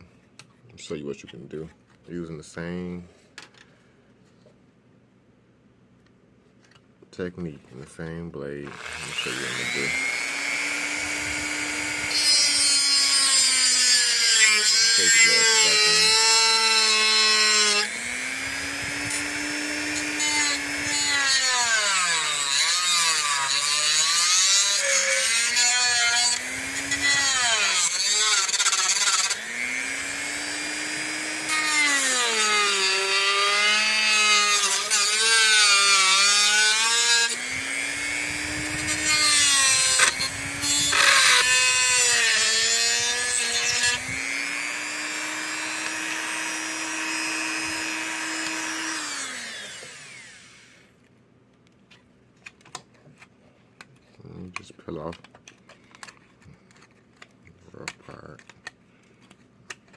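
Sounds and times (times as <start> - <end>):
power tool cutting plastic: 8.6 - 50.9.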